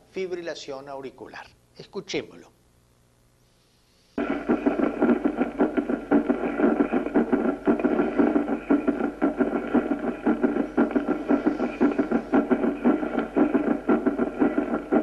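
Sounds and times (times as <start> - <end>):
background noise: 0.0 - 15.0
heartbeat sounds: 4.2 - 15.0.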